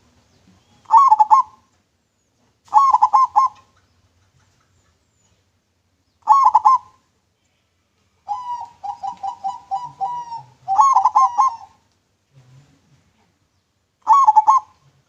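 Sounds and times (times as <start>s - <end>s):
dove cooing: 0.8s - 1.7s, 2.7s - 5.0s, 6.2s - 7.0s, 8.3s - 11.8s, 14.0s - 15.0s.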